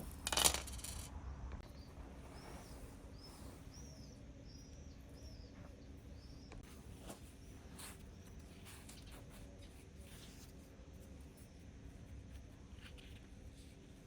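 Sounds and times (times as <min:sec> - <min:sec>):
bird chirping faintly: 0:01.6 - 0:10.1.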